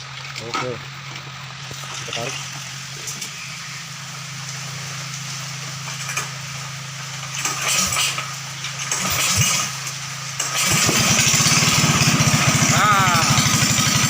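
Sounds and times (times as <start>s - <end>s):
petrol engine running: 0.0s - 14.0s
recoil starter pulls rattling: 7.2s - 14.0s.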